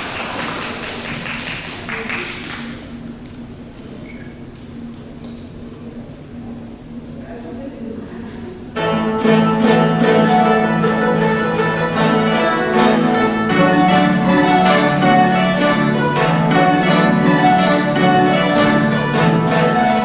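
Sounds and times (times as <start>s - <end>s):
plucked zither playing: 8.8s - 20.0s.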